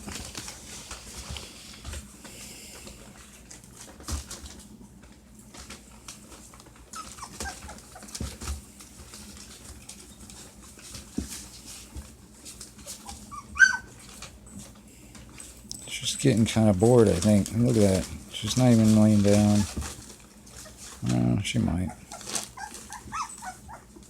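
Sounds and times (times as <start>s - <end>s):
puppy squealing: 6.9s - 8.1s, 13.0s - 14.0s, 21.8s - 23.9s
puppies whimpering: 6.9s - 8.2s, 12.9s - 14.1s, 21.6s - 24.0s.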